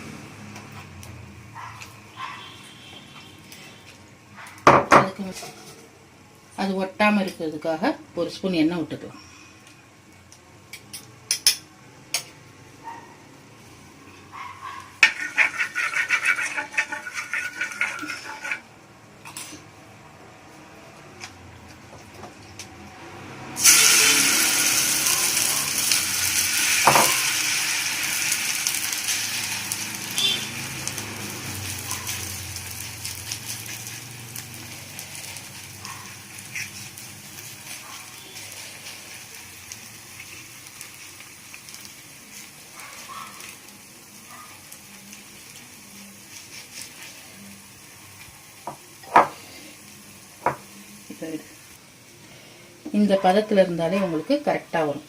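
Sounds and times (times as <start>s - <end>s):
dough sizzling on hot pan: 10.0s - 12.2s, 14.8s - 19.6s, 22.0s - 55.0s.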